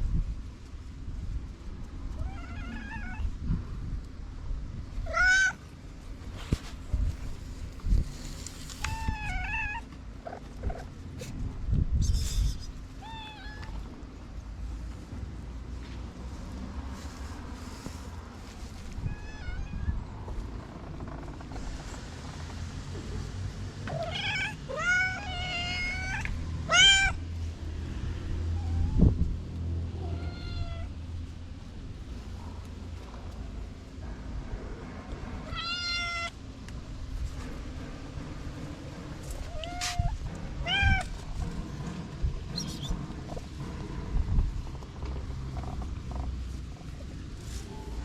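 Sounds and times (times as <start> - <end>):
low rumble: 0.0 - 48.0
cat meowing: 2.2 - 3.3, 5.0 - 5.6, 8.8 - 10.0, 13.0 - 13.9, 19.0 - 20.1, 23.9 - 27.2, 28.5 - 29.2, 30.0 - 31.0, 35.4 - 36.4, 39.5 - 41.2
low thumps and rumbling: 13.6 - 24.2, 36.4 - 47.4.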